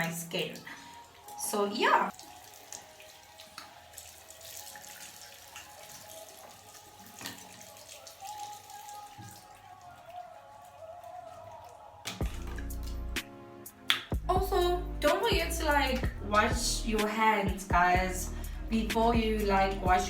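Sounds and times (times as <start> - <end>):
small sharp splashes: 0.0 - 14.2
tap running into sink: 9.1 - 9.5.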